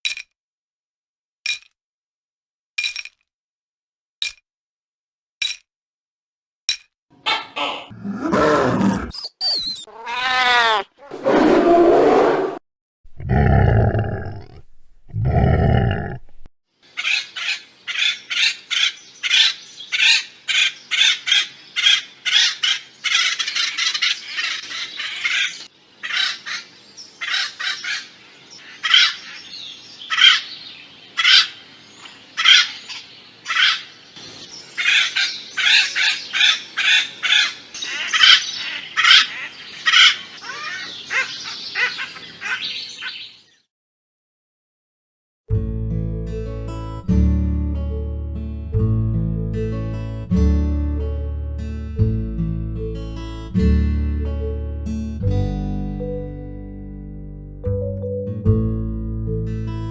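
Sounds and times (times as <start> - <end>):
deep loud animal sounds: 7.6 - 9.2, 9.9 - 16.5
woodpecker calling: 16.9 - 43.6.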